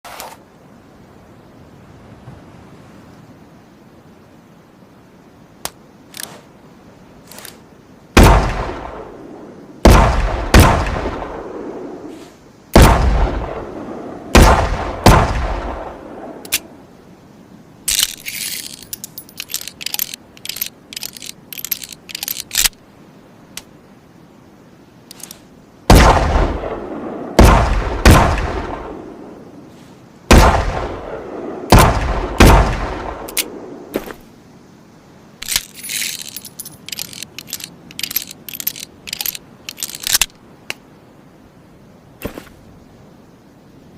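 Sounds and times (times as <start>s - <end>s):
metallic clicks and rattles: 17.9s - 22.8s, 35.4s - 40.4s.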